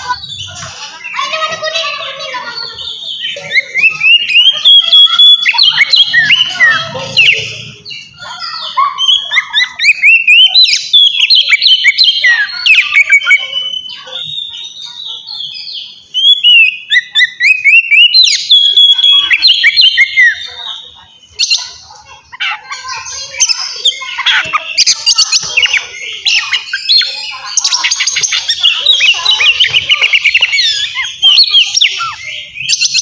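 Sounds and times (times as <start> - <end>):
bird singing whistled phrases: 3.0 - 7.4, 15.7 - 20.6.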